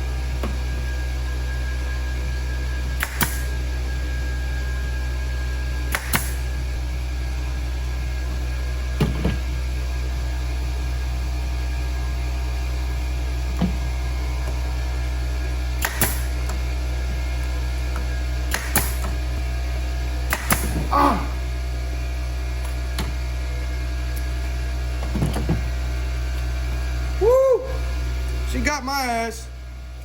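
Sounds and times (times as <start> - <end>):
steady low hum: 0.0 - 30.0
staple gun snapping: 3.0 - 3.4, 5.9 - 6.4, 15.8 - 16.3, 18.5 - 19.1, 20.3 - 20.8.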